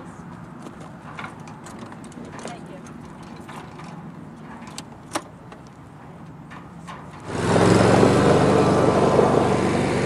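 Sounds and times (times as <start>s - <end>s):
engine running: 7.1s - 10.0s.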